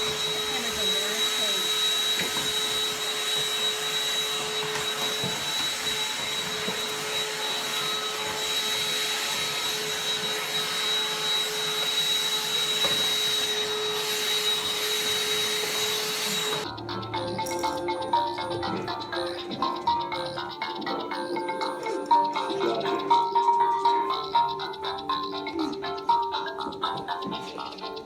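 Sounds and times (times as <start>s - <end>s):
electric motor whining: 0.0s - 16.7s.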